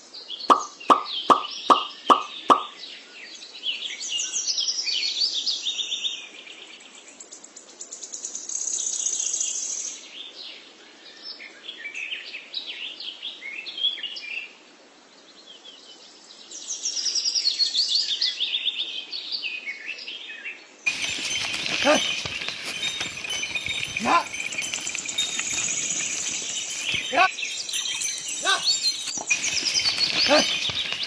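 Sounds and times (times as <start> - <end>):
birds singing and chirping: 0.4 - 4.4, 20.9 - 31.0.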